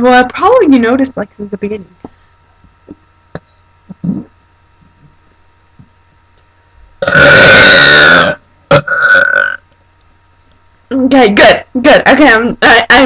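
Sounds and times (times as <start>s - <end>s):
woman burping loudly: 7.0s - 9.6s.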